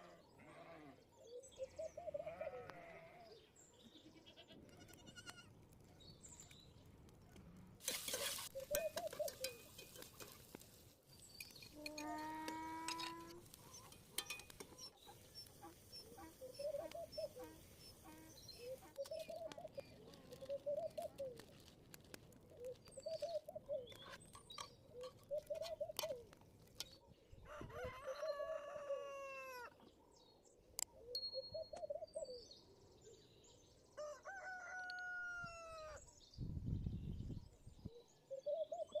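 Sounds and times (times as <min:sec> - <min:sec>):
rooster crowing: 0:27.5 - 0:29.7, 0:34.0 - 0:36.0.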